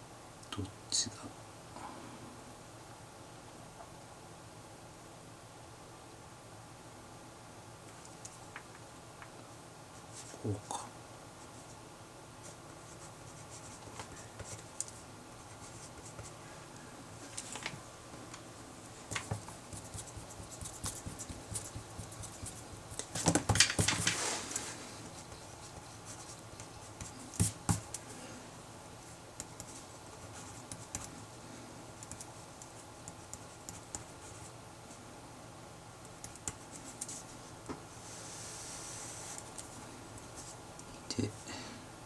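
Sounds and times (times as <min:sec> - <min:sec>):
pen writing on paper: 0:19.3 - 0:23.9, 0:25.1 - 0:28.0.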